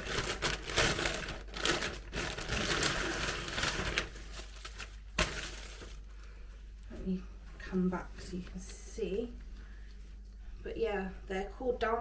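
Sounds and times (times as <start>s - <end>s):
packaging and fabric rustling: 0.0s - 6.2s.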